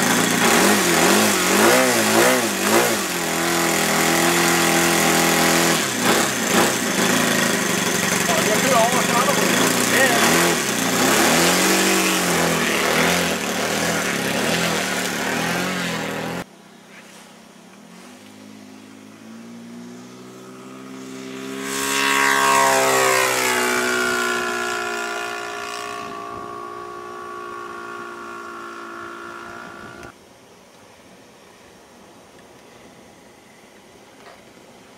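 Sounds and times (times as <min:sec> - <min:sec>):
propeller airplane engine: 0:00.0 - 0:16.5, 0:20.0 - 0:30.2
airplane flying past: 0:17.9 - 0:30.1.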